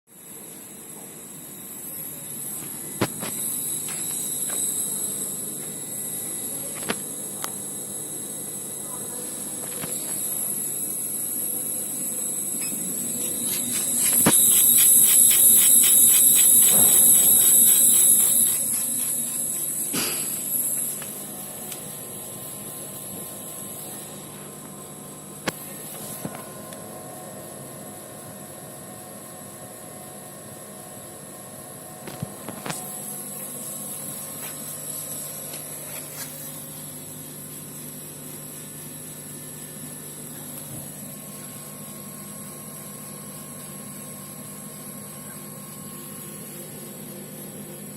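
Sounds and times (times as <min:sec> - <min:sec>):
laser cutter fans hissing: 0:00.2 - 0:47.9
laser cutter hissing: 0:10.4 - 0:24.3.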